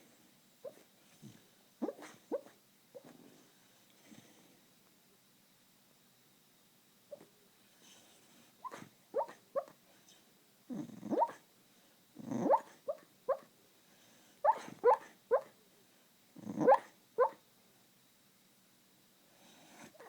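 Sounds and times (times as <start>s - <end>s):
dog yipping and woofing: 8.6s - 9.7s, 11.1s - 11.4s, 12.4s - 13.4s, 14.4s - 15.5s, 16.6s - 17.4s.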